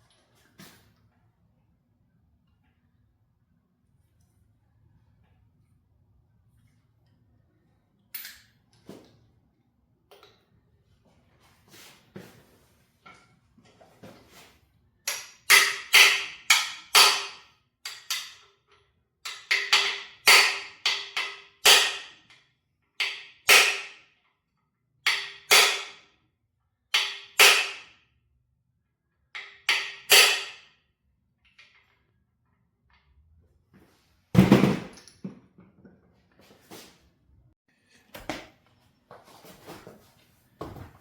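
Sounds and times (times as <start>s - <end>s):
hammer striking metal: 15.1s - 18.4s, 19.3s - 22.3s, 23.0s - 24.0s, 25.1s - 26.0s, 27.0s - 27.9s, 29.4s - 30.7s.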